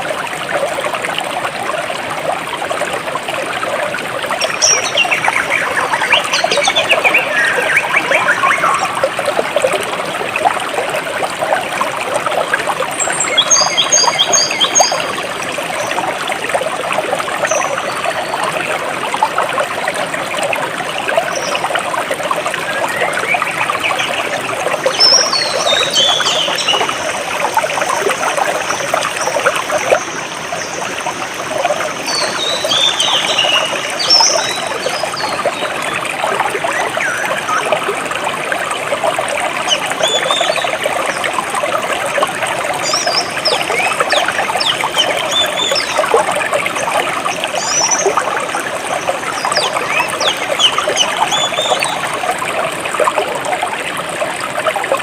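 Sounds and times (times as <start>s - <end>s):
stream trickling and babbling: 0.0s - 55.0s
birds chirping: 4.4s - 9.1s, 22.6s - 27.3s, 32.0s - 35.7s, 49.1s - 52.0s.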